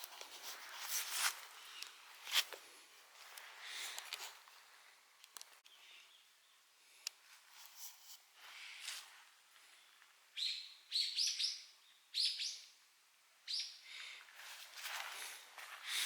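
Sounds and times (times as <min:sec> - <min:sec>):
soft rustle: 0:00.0 - 0:05.6, 0:06.9 - 0:10.2, 0:14.2 - 0:16.0
birds chirping: 0:09.7 - 0:12.8.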